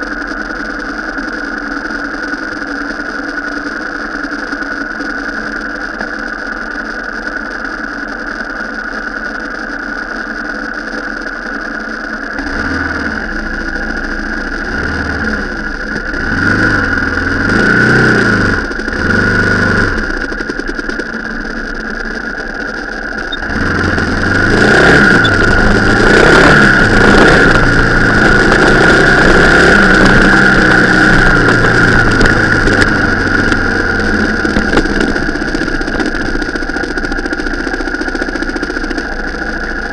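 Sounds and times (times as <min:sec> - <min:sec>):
high-pitched whine: 0:00.0 - 0:39.9
car engine revving: 0:12.4 - 0:39.9.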